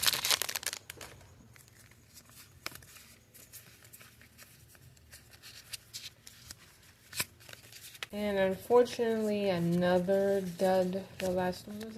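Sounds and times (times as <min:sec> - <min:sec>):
cards rustling and clicking: 0:00.0 - 0:08.2, 0:08.9 - 0:11.9
wrapper crinkling and tearing: 0:00.0 - 0:08.2.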